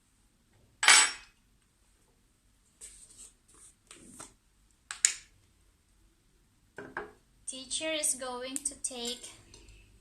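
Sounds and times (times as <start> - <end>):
scratching and rustling on tabletop: 2.8 - 4.4.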